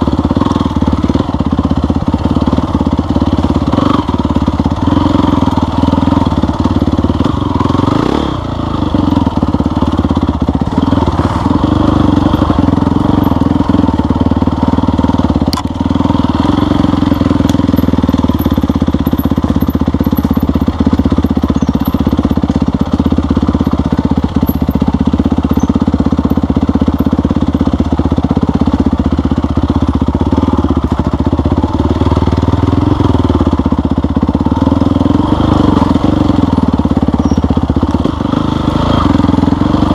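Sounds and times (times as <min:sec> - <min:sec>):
off-road vehicle engine running: 0:00.0 - 0:39.9.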